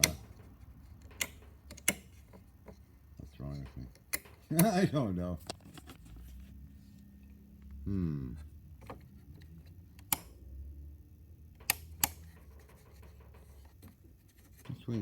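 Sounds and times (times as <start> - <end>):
teletype mechanical clicks: 0.0 - 0.4
steady low hum: 4.6 - 15.0.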